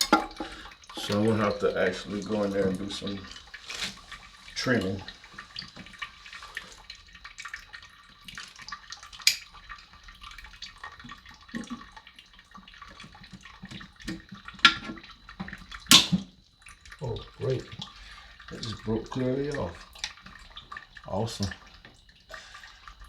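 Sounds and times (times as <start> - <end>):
plastic snapping: 15.9 - 16.2.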